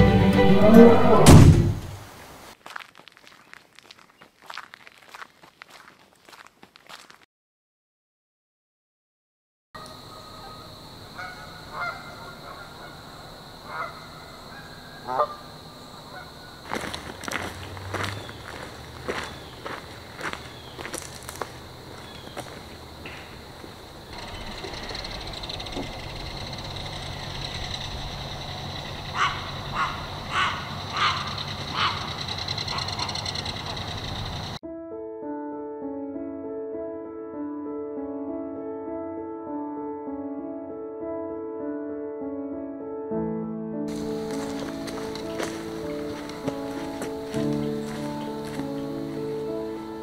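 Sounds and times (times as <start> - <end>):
bird cawing: 9.8 - 15.5, 21.6 - 34.6
geese honking: 9.8 - 34.6, 43.9 - 50.0.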